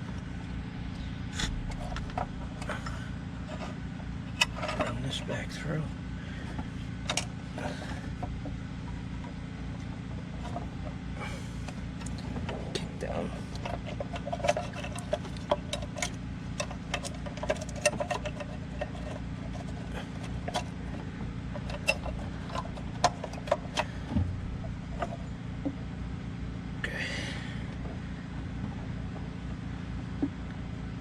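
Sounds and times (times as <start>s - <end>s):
steady low hum: 0.0s - 31.0s
hand tools clicking and knocking: 11.6s - 24.2s.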